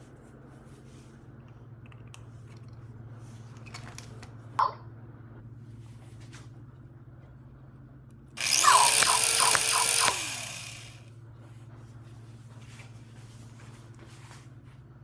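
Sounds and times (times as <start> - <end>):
toy robot electronic sound effect: 8.4 - 11.0.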